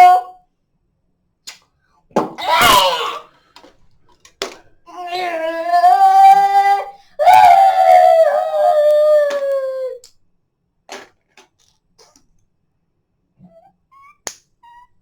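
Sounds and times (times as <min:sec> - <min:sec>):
child making sound effects: 0:13.4 - 0:15.0.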